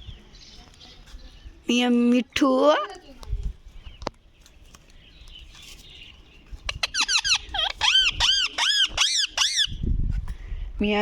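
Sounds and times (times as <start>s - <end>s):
parrot squeaky calls: 6.7s - 9.8s.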